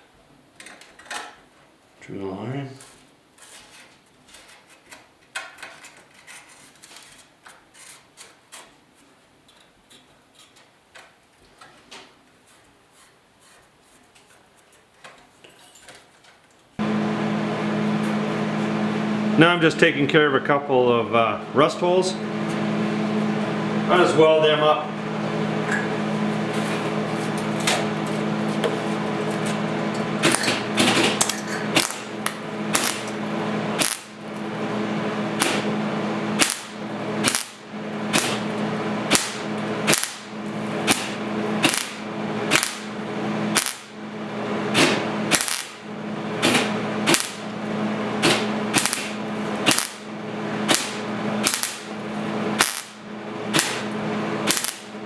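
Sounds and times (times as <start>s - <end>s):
steady hum: 16.8s - 55.0s
welding arc crackling: 26.5s - 55.0s
tack weld pops: 31.8s - 33.1s, 33.8s - 34.1s, 35.4s - 35.7s, 36.4s - 38.4s, 39.1s - 40.2s, 40.9s - 42.9s, 43.6s - 43.9s, 44.8s - 45.8s, 46.4s - 47.4s, 48.2s - 50.0s, 50.7s - 51.8s, 52.6s - 53.9s, 54.5s - 54.8s.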